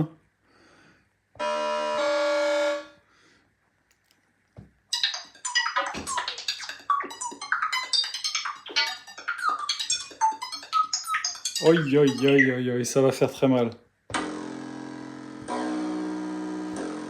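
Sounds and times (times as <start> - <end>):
synthesizer chord: 14.2 - 17.0.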